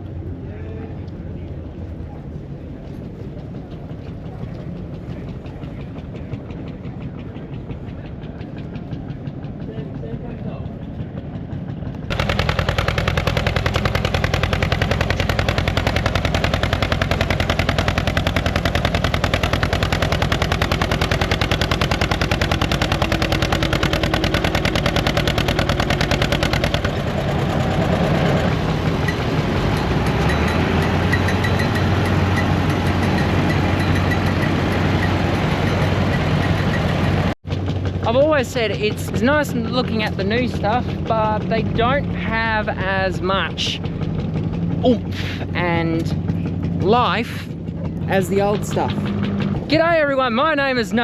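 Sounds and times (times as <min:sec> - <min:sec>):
old engine running: 0:01.5 - 0:51.0.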